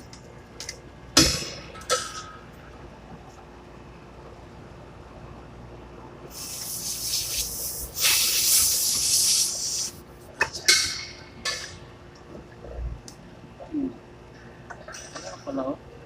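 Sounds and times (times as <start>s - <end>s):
refrigerant hissing from hose: 6.3s - 10.0s.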